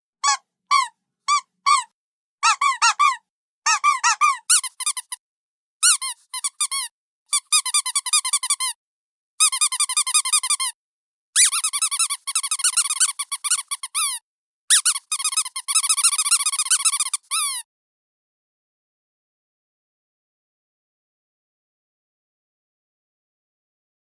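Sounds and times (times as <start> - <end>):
squeaky dog toy squeaking: 0.2 - 5.2, 5.8 - 8.8, 9.4 - 10.8, 11.4 - 17.6.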